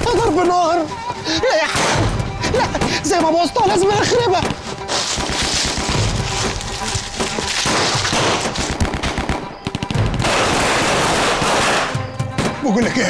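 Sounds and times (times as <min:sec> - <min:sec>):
rapid gunfire: 0:04.4 - 0:06.3, 0:07.5 - 0:12.6.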